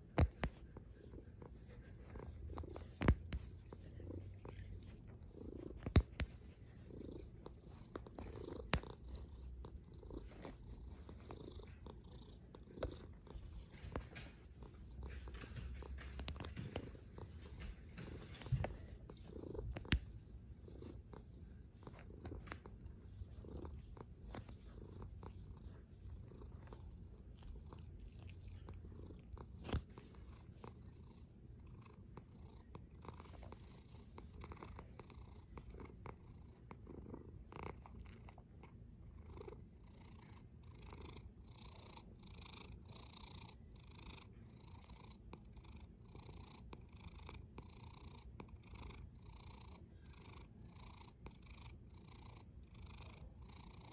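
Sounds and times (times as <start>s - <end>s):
faint rhythmic breathy hiss: 0.0s - 53.9s
cat snoring softly: 39.2s - 53.9s.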